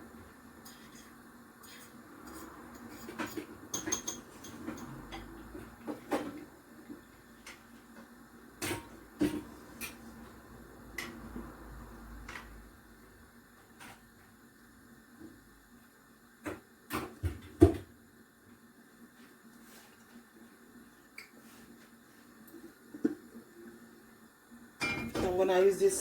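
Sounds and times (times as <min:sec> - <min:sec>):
pots and utensils clattering: 0:00.6 - 0:06.4, 0:08.6 - 0:10.0, 0:24.8 - 0:25.4.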